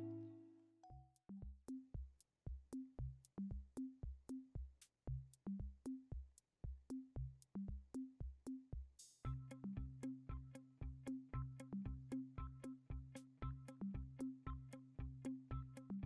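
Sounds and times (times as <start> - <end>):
held synth chord: 0.0 - 0.5.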